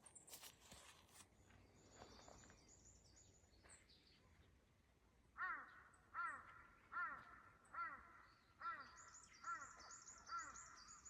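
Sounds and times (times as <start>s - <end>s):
crow cawing: 5.4s - 8.9s.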